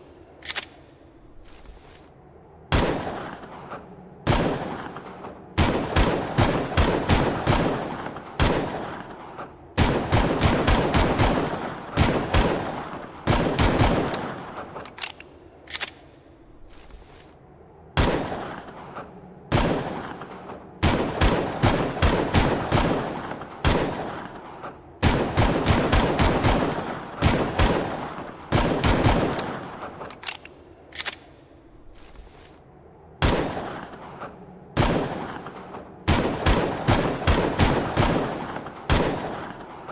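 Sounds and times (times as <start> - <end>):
pistol shots echoing: 19.5 - 30.5, 34.8 - 39.8.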